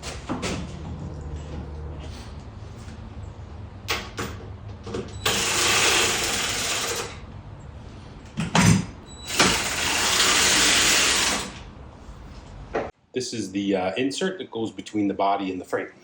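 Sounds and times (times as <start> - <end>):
power tool running: 5.2 - 7.2, 9.3 - 11.6.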